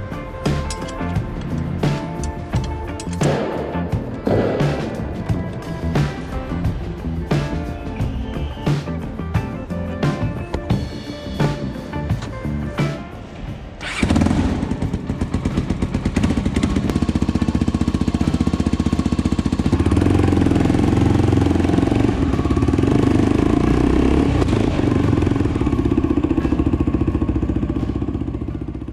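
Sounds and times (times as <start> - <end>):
motorcycle engine revving: 13.8 - 28.9.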